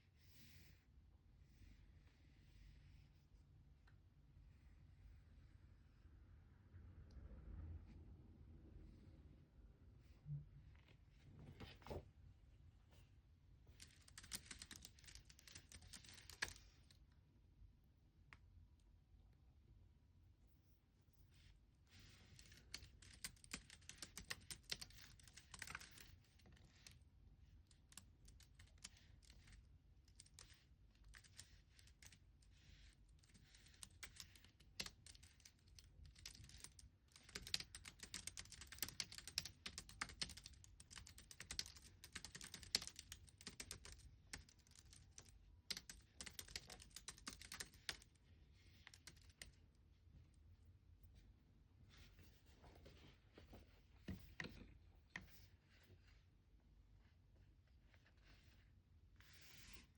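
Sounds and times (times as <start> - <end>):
soft typing on computer keyboard: 13.7 - 17.0, 22.0 - 49.8.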